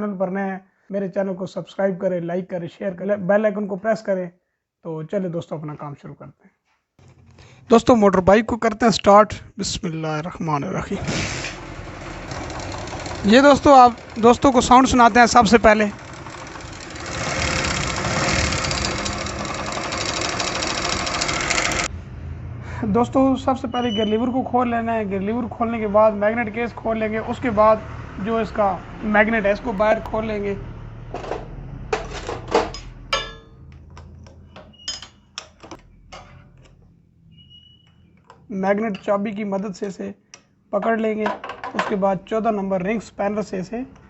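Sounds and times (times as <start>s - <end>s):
metal hand tools clinking on engine: 32.0s - 34.1s.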